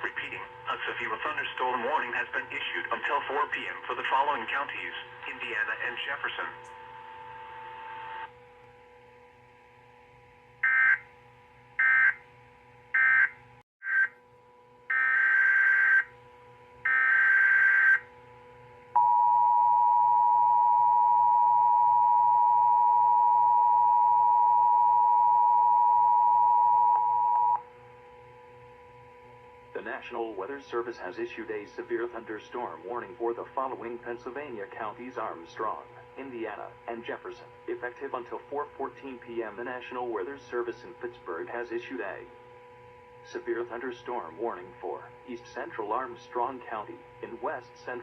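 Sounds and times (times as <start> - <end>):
faint hum: 0.0 - 48.0
screeching data bursts: 16.9 - 18.0
two-tone attention signal: 19.0 - 27.6.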